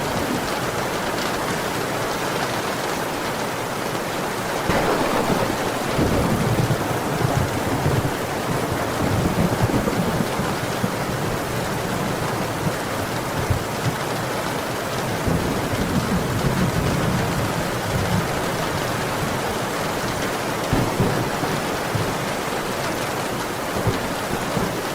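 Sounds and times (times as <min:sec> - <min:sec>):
heavy rain hissing: 0:04.6 - 0:24.9
thunder rumbling: 0:04.7 - 0:13.7, 0:20.6 - 0:24.9.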